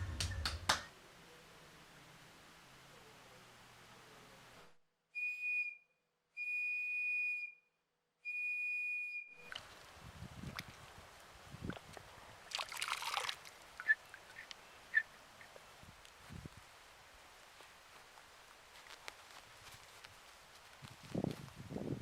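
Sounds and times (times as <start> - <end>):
rustling: 15.3 - 22.0.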